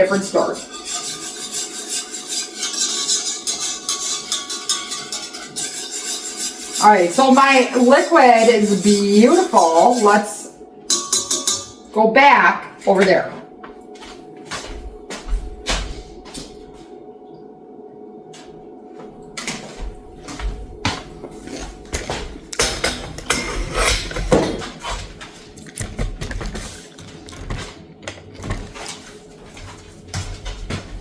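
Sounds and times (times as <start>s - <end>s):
dishes and utensils clinking: 0.0s - 11.9s, 20.9s - 30.9s
steady hum: 0.0s - 31.0s.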